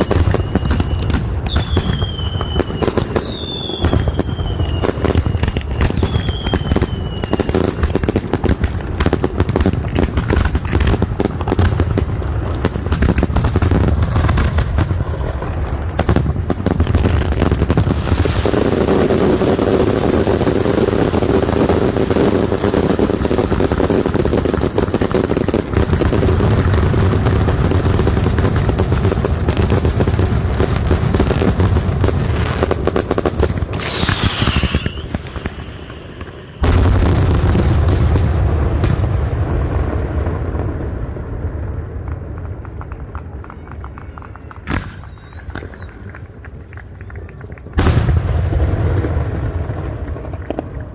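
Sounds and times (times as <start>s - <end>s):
falling firework whistle: 0.0s - 8.2s, 33.6s - 37.0s, 42.8s - 46.2s
firework bangs and crackling: 0.0s - 50.9s.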